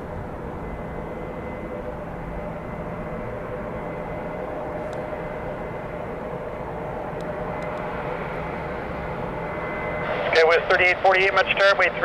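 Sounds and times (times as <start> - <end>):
jet engines rushing and whining: 0.0 - 12.0.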